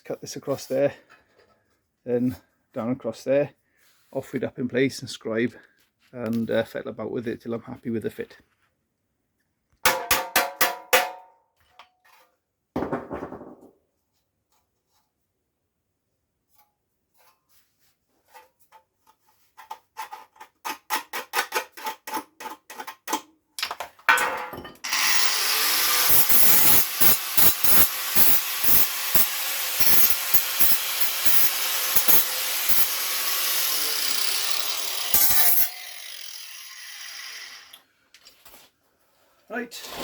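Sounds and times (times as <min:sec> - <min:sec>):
power tool cutting sheet steel: 0:24.8 - 0:37.8.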